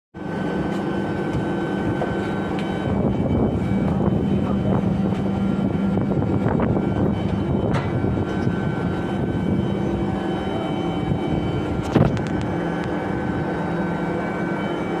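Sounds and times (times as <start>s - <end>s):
machinery humming: 0.2s - 15.0s.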